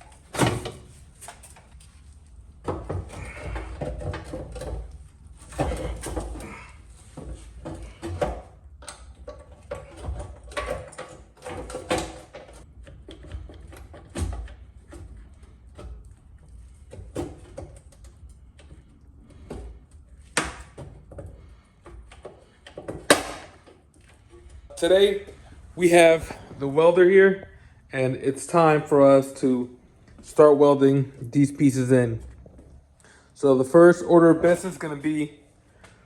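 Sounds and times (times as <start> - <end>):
knocks and clanks of tools: 2.6 - 16.1.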